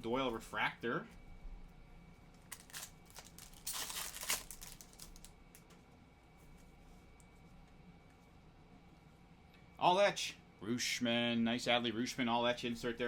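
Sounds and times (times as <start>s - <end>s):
wrapper tearing: 2.4s - 5.4s
card pack wrapper crinkling: 2.4s - 5.6s.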